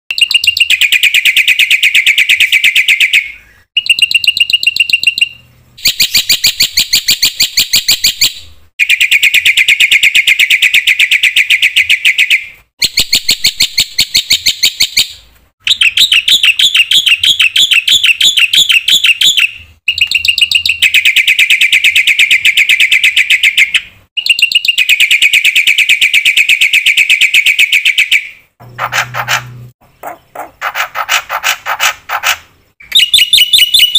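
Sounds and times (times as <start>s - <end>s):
bird singing rapid trills: 15.7s - 33.9s.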